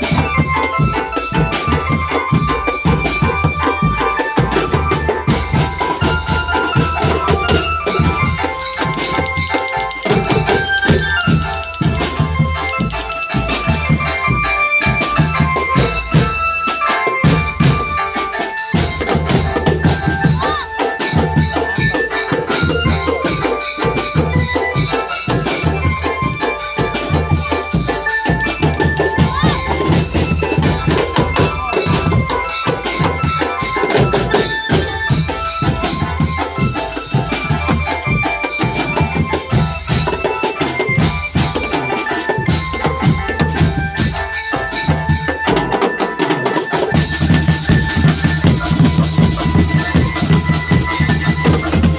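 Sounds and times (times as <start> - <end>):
cymbal jingles: 0.0 - 45.8
melody line: 0.0 - 51.9
fast dense drumming: 25.5 - 33.4.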